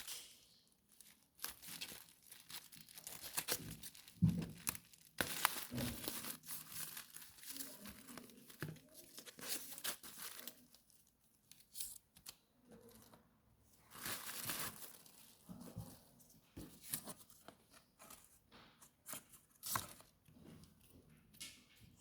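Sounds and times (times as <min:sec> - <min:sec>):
packaging crinkling and tearing: 0:00.0 - 0:12.4, 0:13.9 - 0:15.4.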